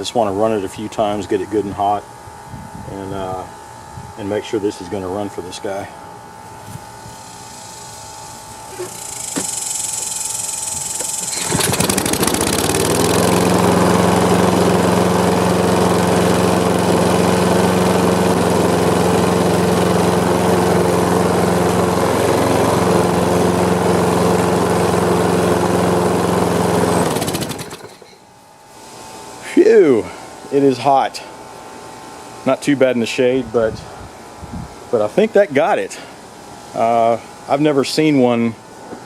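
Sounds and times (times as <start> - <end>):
lawn mower engine running: 7.2 - 28.2.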